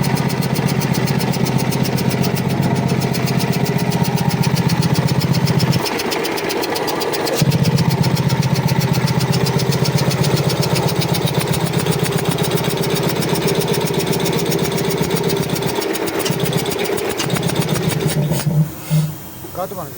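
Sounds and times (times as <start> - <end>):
air compressor running: 0.0 - 19.9.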